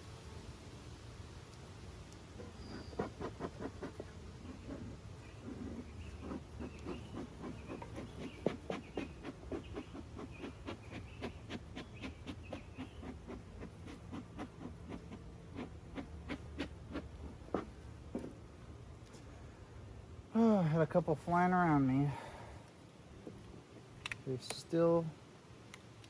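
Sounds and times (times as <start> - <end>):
honeybees buzzing: 0.0 - 19.0.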